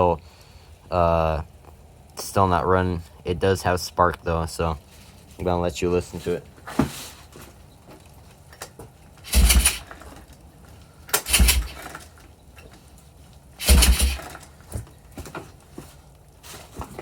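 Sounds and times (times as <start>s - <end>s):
engine turning over on pull start: 9.2s - 10.1s, 11.1s - 12.2s, 13.6s - 14.5s.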